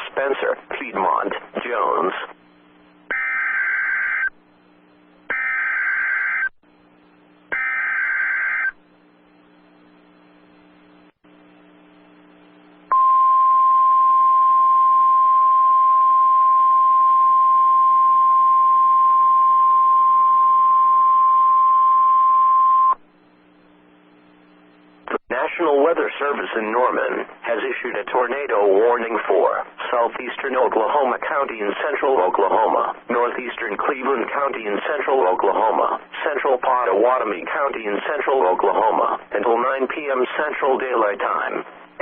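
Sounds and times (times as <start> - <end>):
steady warning alarm tone: 3.1 - 4.4, 5.3 - 6.5, 7.5 - 8.8.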